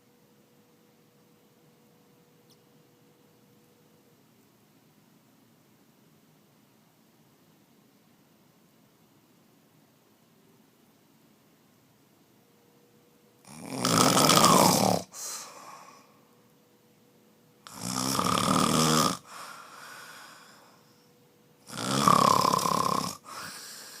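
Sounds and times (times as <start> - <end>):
man snoring: 13.4 - 16.0, 17.7 - 20.7, 21.6 - 24.0
quiet breath: 15.0 - 16.6, 19.2 - 21.7, 23.1 - 24.0.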